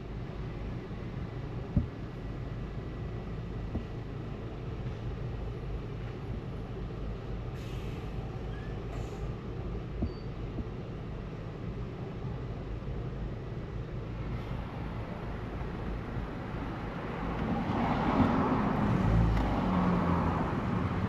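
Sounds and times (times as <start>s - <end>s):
traffic rumbling: 0.0s - 21.0s
bus air brakes hissing: 7.5s - 9.4s.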